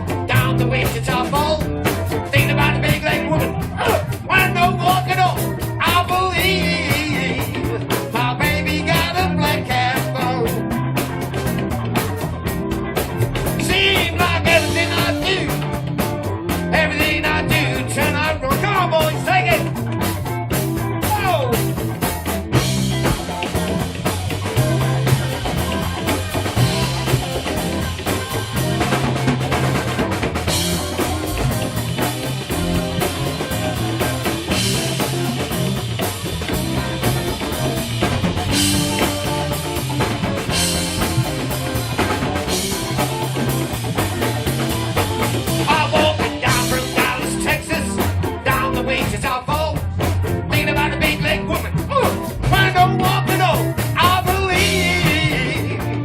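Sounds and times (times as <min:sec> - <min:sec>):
blues band playing: 0:00.0 - 0:56.0
electric guitar bending notes: 0:00.0 - 0:56.0.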